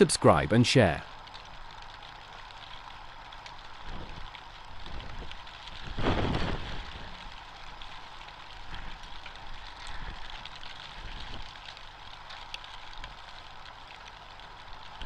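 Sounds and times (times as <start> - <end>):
rain: 0.0 - 15.0
wind: 0.0 - 15.0
low wind gusts: 2.5 - 13.1.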